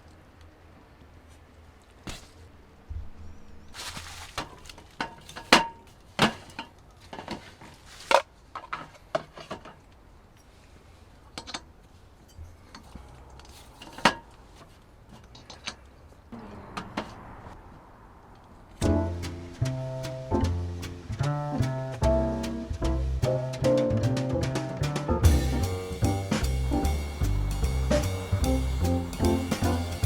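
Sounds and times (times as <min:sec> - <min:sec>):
brief rustle: 0:03.1 - 0:10.8.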